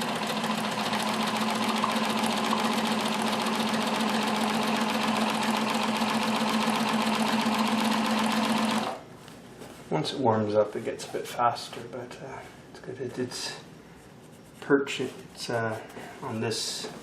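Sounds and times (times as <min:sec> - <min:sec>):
sewing machine motor hum: 0:00.0 - 0:09.0.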